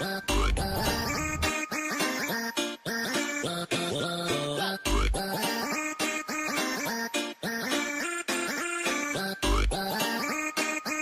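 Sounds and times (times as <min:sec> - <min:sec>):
upbeat background music: 0:00.0 - 0:11.0.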